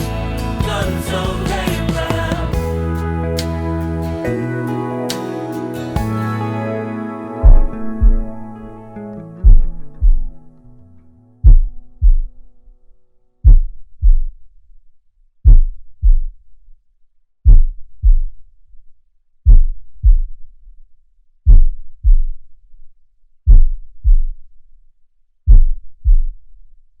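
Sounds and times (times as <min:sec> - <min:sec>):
heartbeat thumps: 0:07.4 - 0:08.6, 0:09.4 - 0:10.6, 0:11.4 - 0:12.5, 0:13.4 - 0:14.4, 0:15.4 - 0:16.4, 0:17.4 - 0:18.4, 0:19.4 - 0:20.4, 0:21.4 - 0:22.4, 0:23.5 - 0:24.4, 0:25.5 - 0:26.4.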